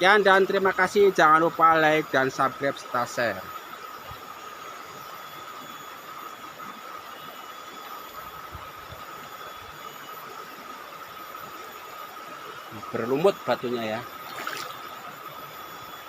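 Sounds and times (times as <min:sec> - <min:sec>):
water rushing over stones: 0:14.2 - 0:15.1.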